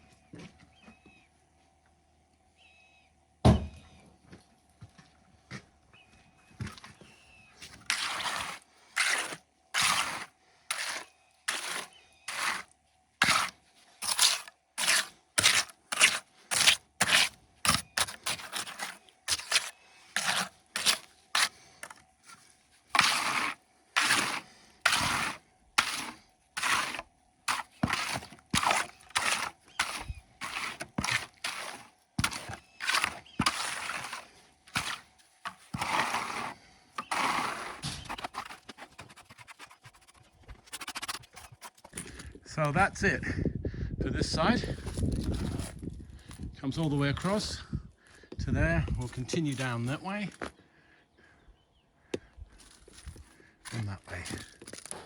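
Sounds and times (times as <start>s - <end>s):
tool scraping wet concrete: 7.6s - 42.6s, 44.5s - 45.8s, 46.7s - 47.6s, 53.6s - 55.0s.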